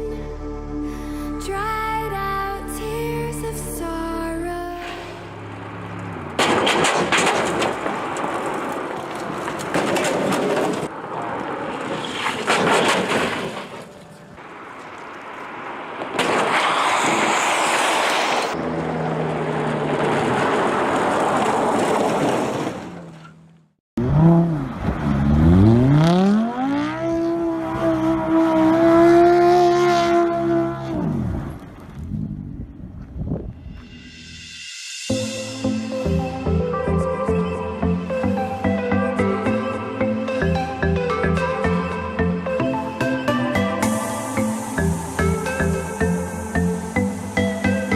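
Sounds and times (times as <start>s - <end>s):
rushing vehicle noise: 3.6s - 47.9s
car engine revving: 23.2s - 32.7s.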